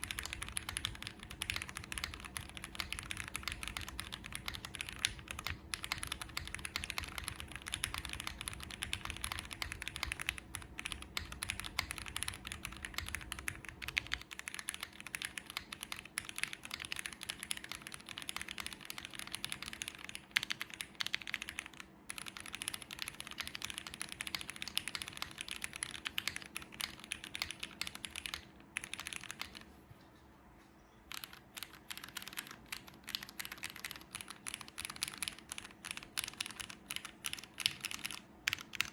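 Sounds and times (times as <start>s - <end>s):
mechanical keyboard typing: 0.0s - 29.7s, 31.1s - 38.9s.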